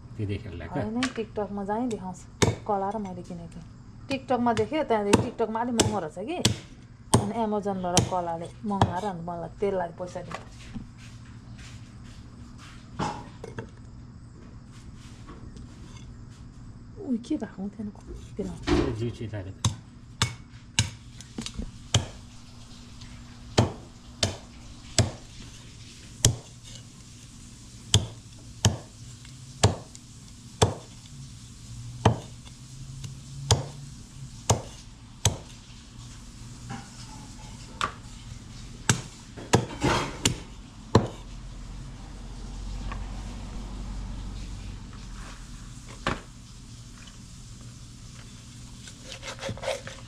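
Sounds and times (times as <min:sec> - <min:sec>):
knife chopping on a board: 0:02.4 - 0:02.7, 0:04.5 - 0:09.1, 0:19.6 - 0:22.2, 0:23.5 - 0:25.6, 0:26.2 - 0:26.8, 0:27.9 - 0:29.0, 0:29.6 - 0:30.0, 0:30.6 - 0:31.1, 0:32.0 - 0:33.8, 0:34.4 - 0:35.6, 0:38.8 - 0:41.2.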